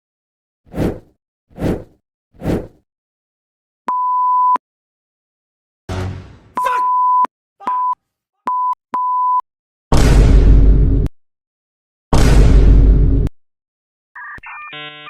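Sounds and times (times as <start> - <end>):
censor bleeps: 6.6 - 9.4.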